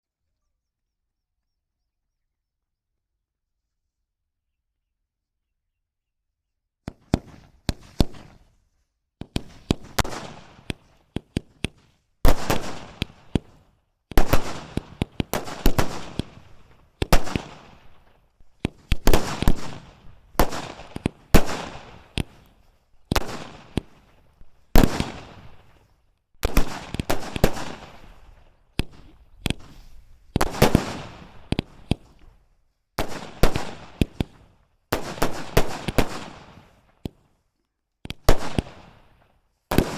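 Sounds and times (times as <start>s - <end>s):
aerial fireworks bangs: 6.9s - 8.4s.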